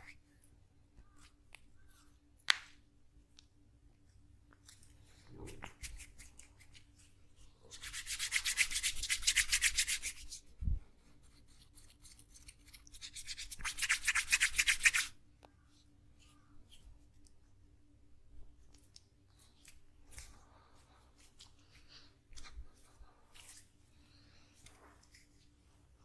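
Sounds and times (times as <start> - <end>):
hands rubbing rapidly: 7.7 - 15.2.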